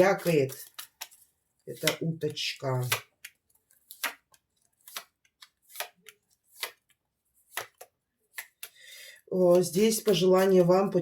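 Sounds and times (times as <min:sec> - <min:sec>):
cards snapping and tapping: 0:00.2 - 0:01.2, 0:02.8 - 0:08.8.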